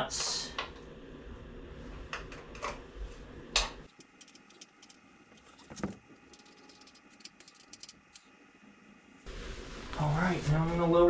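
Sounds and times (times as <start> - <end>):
hand tools clinking on metal: 3.9 - 9.3.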